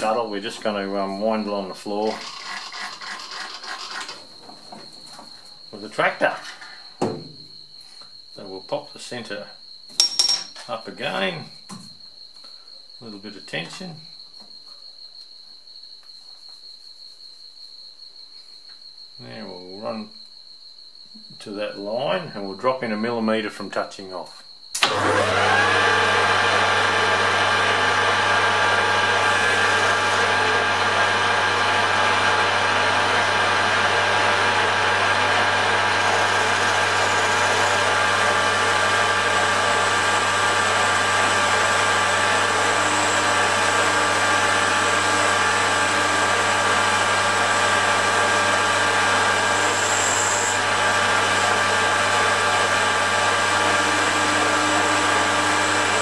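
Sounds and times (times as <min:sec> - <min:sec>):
metal lathe motor and gear hum: 0:01.9 - 0:04.2, 0:24.8 - 0:56.0.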